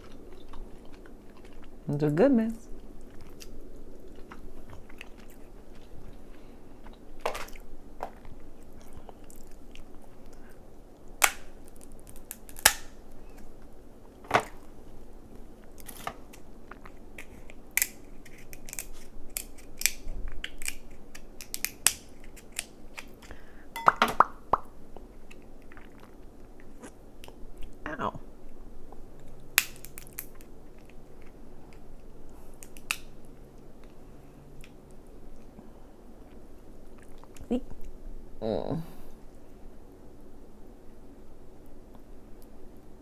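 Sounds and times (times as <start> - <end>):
chewing and smacking: 0.0 - 23.4, 24.2 - 27.8, 28.4 - 38.0
crab shell cracking: 11.2 - 13.5, 15.7 - 23.4, 29.2 - 31.8, 32.6 - 33.2.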